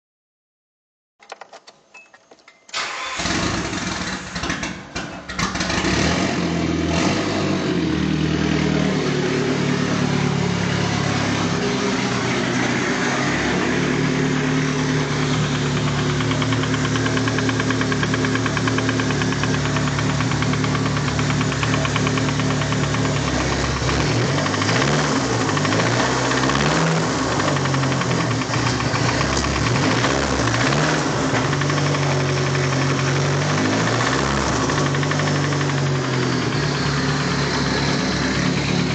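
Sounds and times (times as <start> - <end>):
car engine starting and idling: 2.7 - 38.9
engine revving: 2.8 - 38.9
engine knocking: 14.2 - 38.9.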